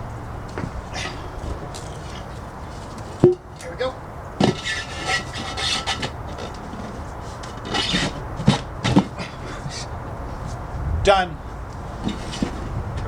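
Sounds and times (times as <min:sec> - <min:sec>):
tire bead scraping over rim: 0:00.0 - 0:13.0
sharp knocks: 0:00.5 - 0:09.7.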